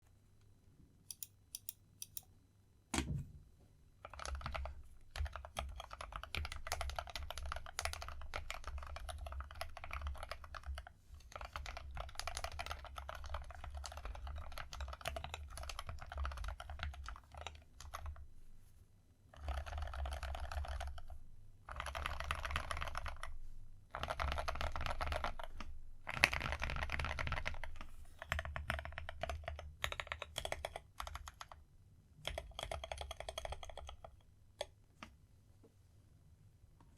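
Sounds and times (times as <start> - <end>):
typing on mechanical keyboard: 4.0 - 18.2, 19.3 - 23.3, 23.9 - 31.6, 32.2 - 34.7.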